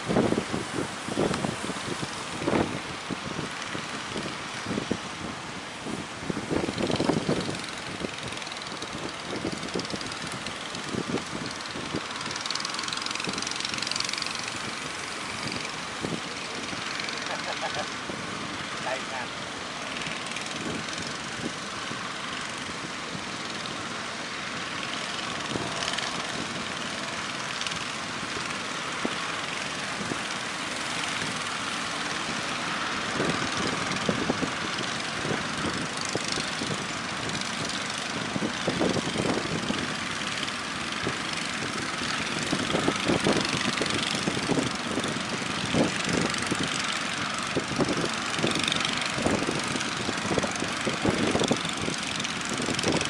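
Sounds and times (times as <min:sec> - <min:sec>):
engine droning: 0:00.0 - 0:53.0
surf rushing: 0:00.0 - 0:53.0.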